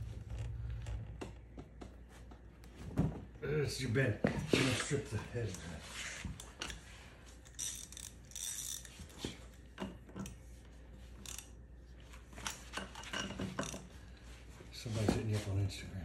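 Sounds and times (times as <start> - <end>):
ratchet clicking: 7.4 - 9.2, 11.2 - 11.6.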